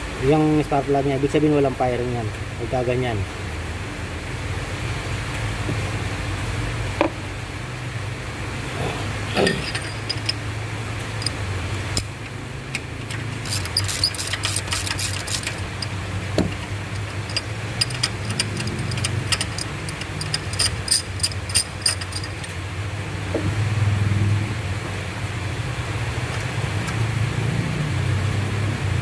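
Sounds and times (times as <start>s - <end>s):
low steady hum: 5.3s - 27.2s
ratchet clicking: 9.5s - 10.5s, 11.2s - 11.4s, 12.7s - 22.6s.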